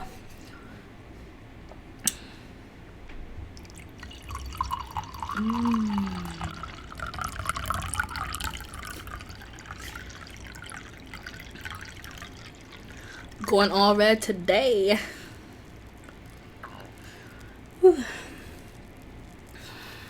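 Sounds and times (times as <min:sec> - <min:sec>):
wine pouring into a glass: 0:03.5 - 0:13.8.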